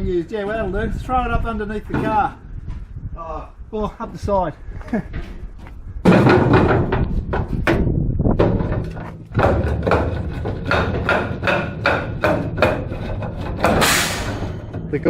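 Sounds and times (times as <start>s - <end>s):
timber banging on wheel chock: 6.0s - 15.0s.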